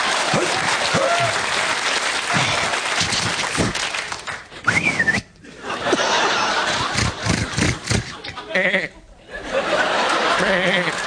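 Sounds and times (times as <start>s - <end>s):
whistled glide: 4.6s - 5.3s
audience laughing: 5.4s - 11.0s.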